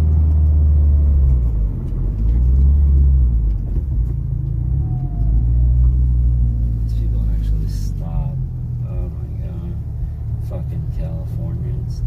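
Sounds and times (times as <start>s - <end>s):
motor vehicle rumbling: 0.0s - 12.0s.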